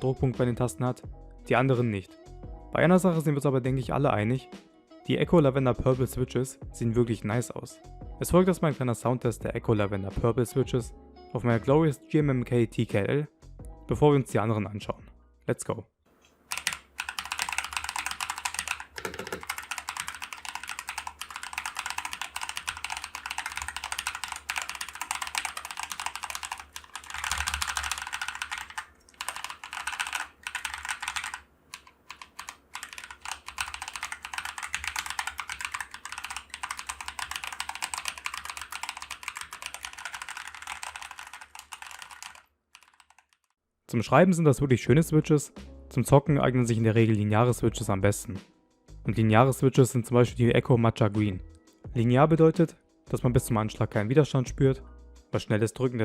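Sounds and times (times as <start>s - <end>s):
mechanical keyboard typing: 16.5s - 43.6s.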